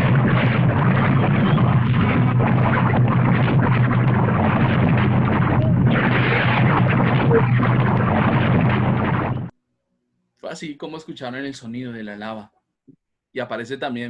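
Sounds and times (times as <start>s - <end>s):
volcano rumbling roar: 0.0s - 9.5s.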